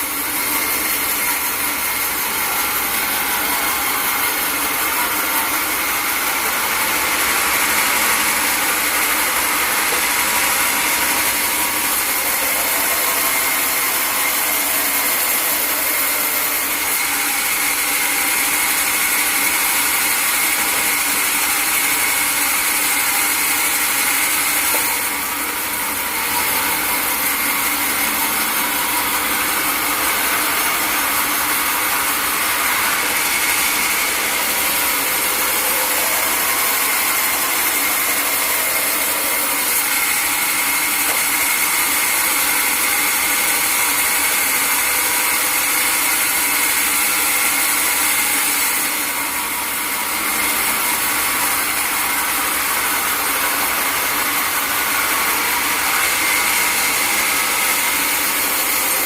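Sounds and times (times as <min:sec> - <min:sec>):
sawmill saw cutting wood: 0:00.0 - 0:59.0.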